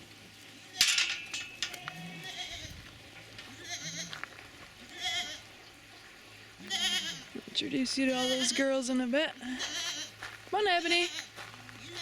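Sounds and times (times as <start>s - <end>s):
goats bleating: 1.7s - 5.5s, 6.6s - 7.4s, 8.0s - 12.0s.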